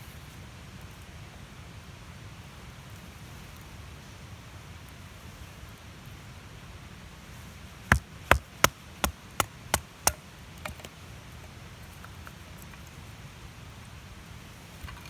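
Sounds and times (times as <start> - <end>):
sharp chopping strikes: 7.9 - 10.9.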